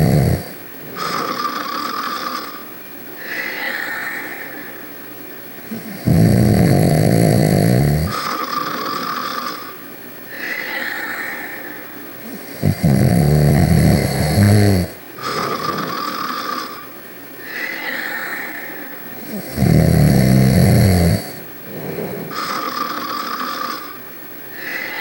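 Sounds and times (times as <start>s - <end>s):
loud snores: 0.0s - 2.6s, 5.7s - 9.7s, 12.3s - 16.8s, 19.2s - 24.0s
soft hissing breaths: 0.0s - 25.0s.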